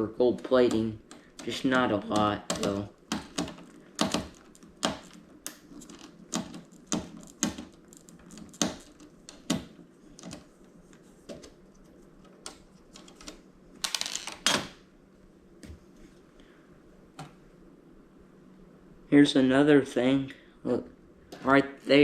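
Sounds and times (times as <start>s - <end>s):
small parts clicking and knocking: 0.3s - 10.5s, 12.2s - 14.7s
parts clattering: 12.8s - 14.8s.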